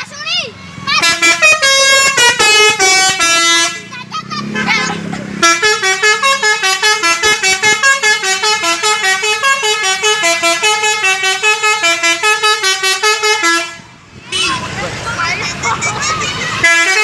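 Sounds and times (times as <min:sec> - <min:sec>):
multi-tone musical horn melody: 0:01.0 - 0:03.9, 0:05.4 - 0:14.6, 0:16.6 - 0:17.0.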